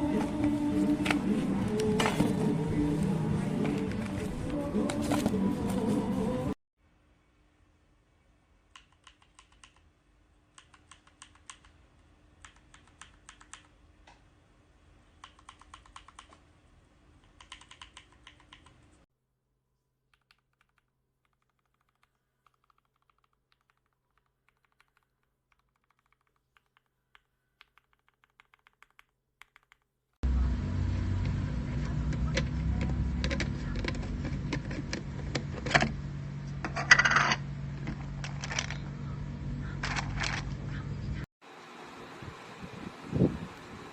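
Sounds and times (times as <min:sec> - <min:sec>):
mechanical keyboard keystroke clicks: 0:08.8 - 0:09.8, 0:10.6 - 0:11.8, 0:12.4 - 0:13.7, 0:15.2 - 0:16.4, 0:17.2 - 0:18.8.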